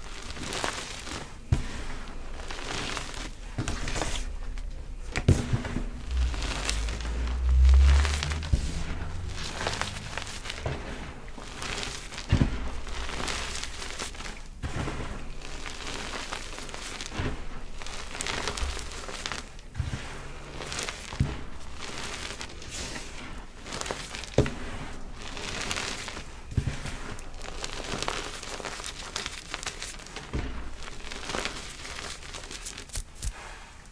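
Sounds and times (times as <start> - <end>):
chalk crunching and crackling: 27.0 - 33.7.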